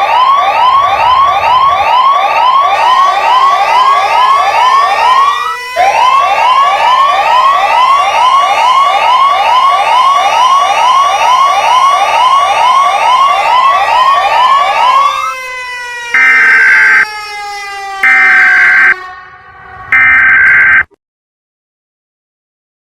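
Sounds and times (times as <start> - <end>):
rising siren wail: 0.0 - 21.0
long high beeps: 16.2 - 17.1, 18.0 - 19.0, 19.9 - 20.9
falling tone: 16.2 - 21.0.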